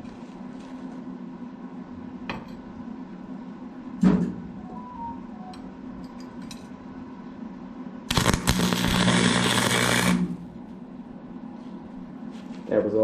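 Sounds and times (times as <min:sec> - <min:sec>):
low electrical hum: 0:00.0 - 0:13.0
welder arc crackling: 0:08.1 - 0:10.6.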